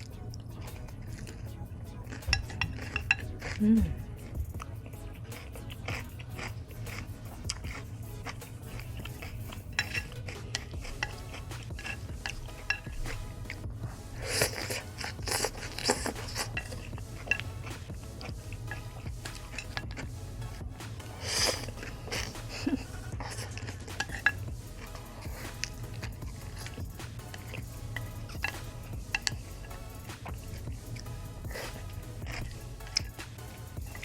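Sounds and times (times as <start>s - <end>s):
crunching bites of food: 5.3s - 13.6s.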